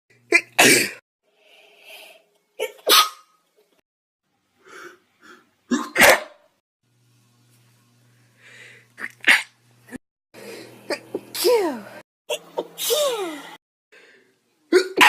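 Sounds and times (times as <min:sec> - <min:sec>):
person sneezing: 0:00.3 - 0:01.0, 0:05.7 - 0:06.3, 0:09.0 - 0:09.5, 0:10.9 - 0:13.6, 0:14.7 - 0:15.0.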